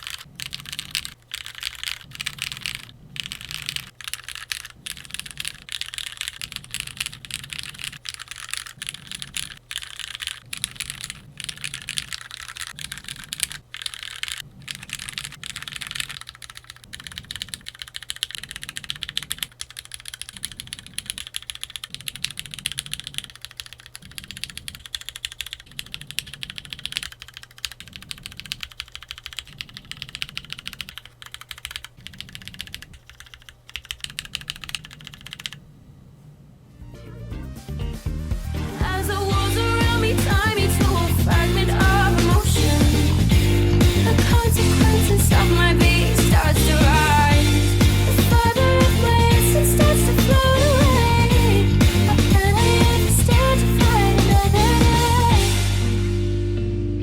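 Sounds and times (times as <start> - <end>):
mechanical keyboard typing: 0.0 - 35.6.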